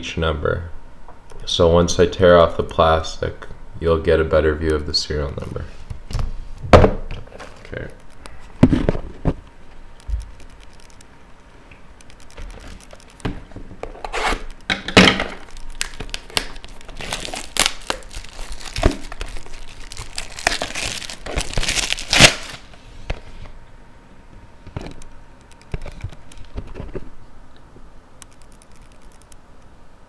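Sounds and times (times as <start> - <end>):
plastic shrink-wrap tearing: 10.0 - 11.0, 12.0 - 13.2, 15.3 - 22.7.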